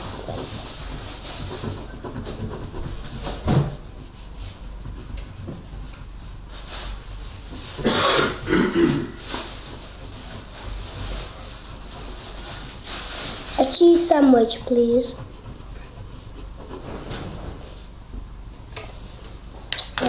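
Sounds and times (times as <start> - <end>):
man coughing: 7.8 - 9.2.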